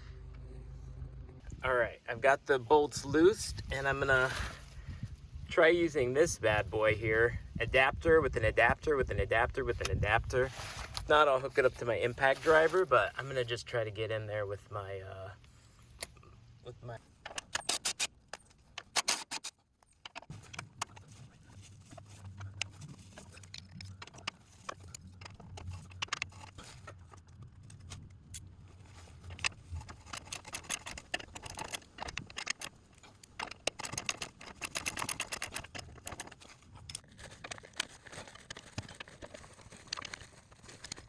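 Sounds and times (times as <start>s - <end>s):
metal tools clinking: 28.8s - 41.0s
hand ratchet clicking: 29.9s - 36.4s.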